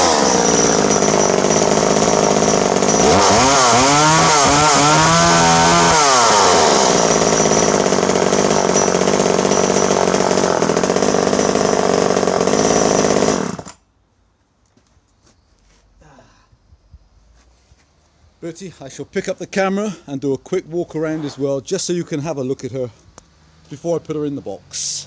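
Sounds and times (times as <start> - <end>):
chainsaw idling and revving: 0.0 - 13.8.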